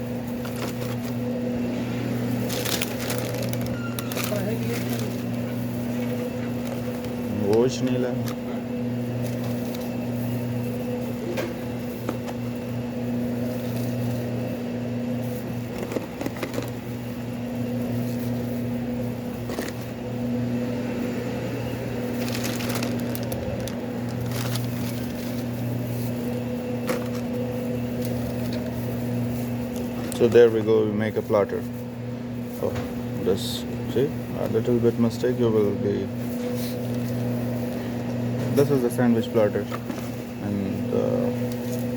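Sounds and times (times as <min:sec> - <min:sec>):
shop equipment humming: 0:00.0 - 0:41.9.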